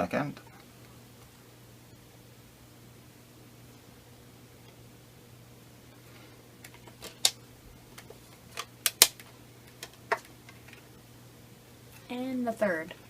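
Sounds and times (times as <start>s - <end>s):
plastic case clicks and snaps: 6.6s - 7.4s, 8.0s - 10.3s.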